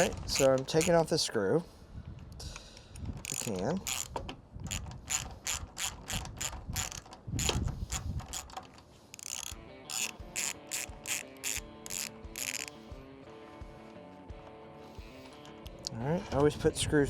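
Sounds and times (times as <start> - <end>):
ratchet wrench clicking: 0.0 - 1.1, 3.2 - 12.8.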